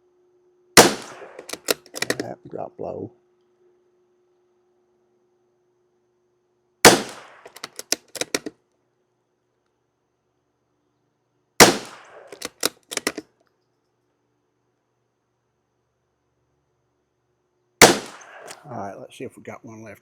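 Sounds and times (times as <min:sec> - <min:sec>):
rifle bolt clicks: 0:00.8 - 0:02.3, 0:06.9 - 0:08.5, 0:11.6 - 0:13.2, 0:17.8 - 0:18.6
rifle shots: 0:00.8 - 0:02.3, 0:06.9 - 0:08.5, 0:11.6 - 0:13.2, 0:17.8 - 0:18.6.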